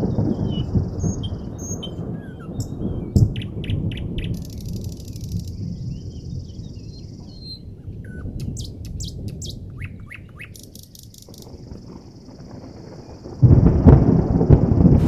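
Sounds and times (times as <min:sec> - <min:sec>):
songbirds chirping and singing: 0:00.0 - 0:11.8.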